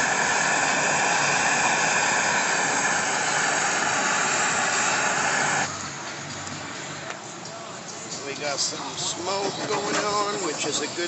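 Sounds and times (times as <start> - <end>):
heat gun blowing hot air: 0.0 - 5.8, 9.1 - 11.0.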